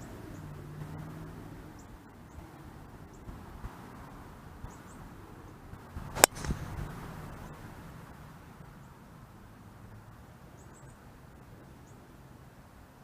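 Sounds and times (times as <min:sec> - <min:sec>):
golf club striking ball: 0:06.1 - 0:07.0.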